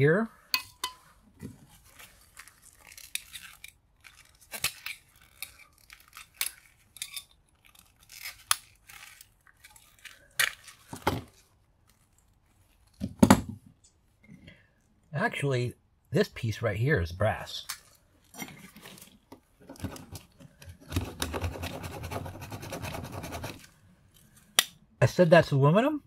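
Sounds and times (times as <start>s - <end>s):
small metal parts clicking and rattling: 2.4s - 10.8s.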